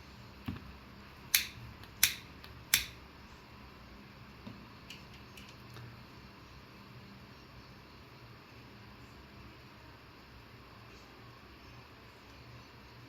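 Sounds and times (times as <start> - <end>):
hand lighter clicking: 1.3 - 3.0.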